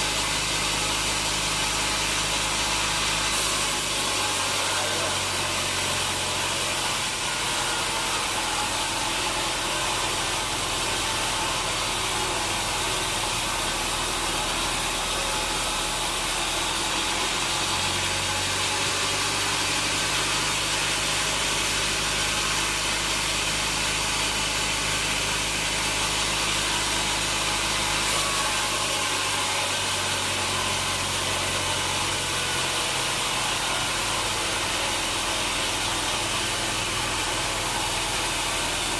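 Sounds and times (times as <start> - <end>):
sawmill machinery hum: 0.0 - 38.9.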